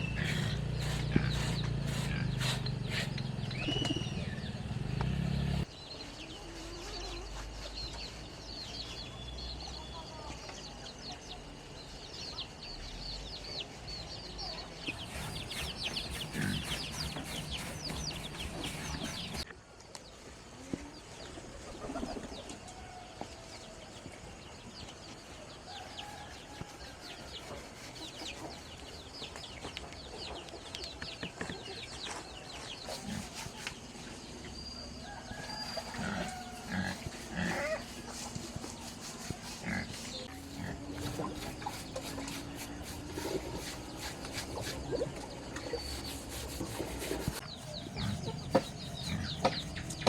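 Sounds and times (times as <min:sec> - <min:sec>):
chickens clucking: 0:00.0 - 0:05.0, 0:14.9 - 0:19.5, 0:35.0 - 0:50.0
small birds chirping: 0:00.0 - 0:50.0.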